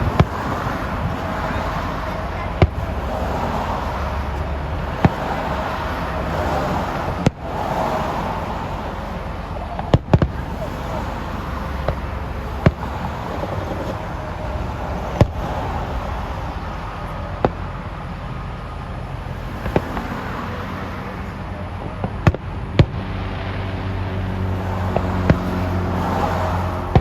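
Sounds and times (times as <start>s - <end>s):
fireworks bangs: 0.0s - 17.9s, 19.4s - 23.8s
background rumble: 0.0s - 27.0s.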